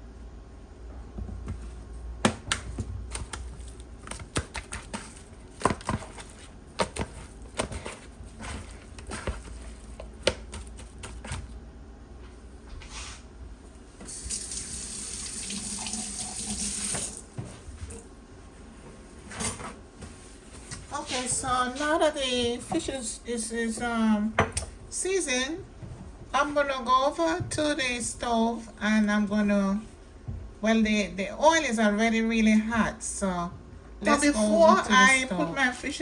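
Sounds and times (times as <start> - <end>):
kitchen tap running: 14.0 - 18.1.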